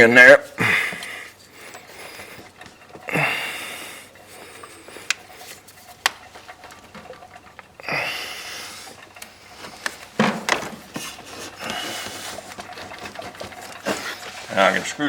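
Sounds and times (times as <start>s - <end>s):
heavy breath out: 0.6s - 5.2s, 7.8s - 9.8s, 11.4s - 12.6s
clicks and knocks of tools: 4.1s - 7.8s, 8.8s - 14.4s.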